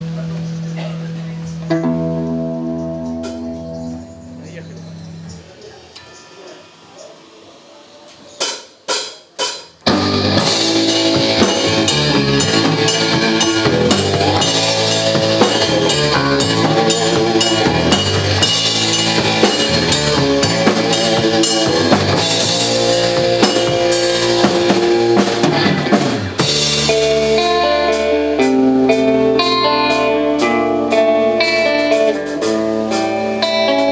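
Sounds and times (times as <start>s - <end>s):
rock band playing: 0.0s - 5.3s, 8.4s - 33.9s
drum hits: 8.5s - 27.7s.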